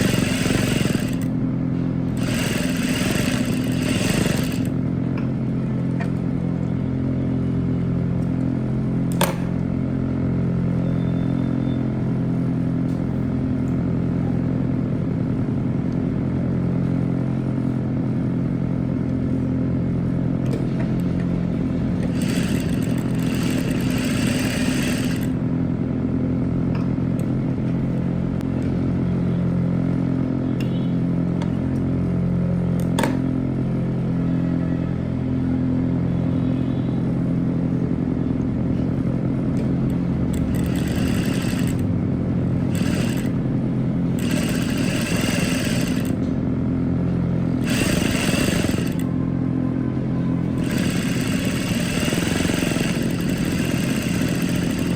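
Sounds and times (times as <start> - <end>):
sewing machine motor hum: 0.0 - 1.4, 2.0 - 5.0, 21.6 - 25.5, 39.9 - 46.4, 47.4 - 49.1, 50.4 - 54.9.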